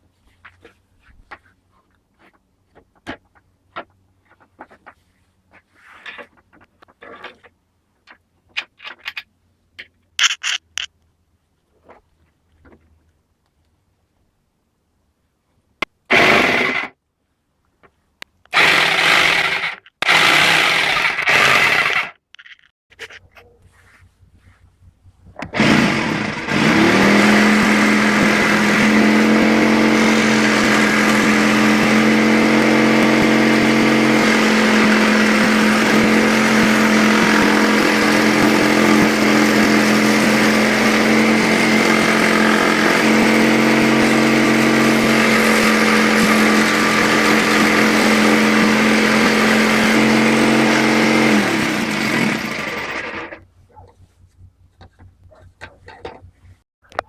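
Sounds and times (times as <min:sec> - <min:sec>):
electric jigsaw running: 0:16.1 - 0:17.0, 0:18.5 - 0:22.2, 0:25.4 - 0:53.4.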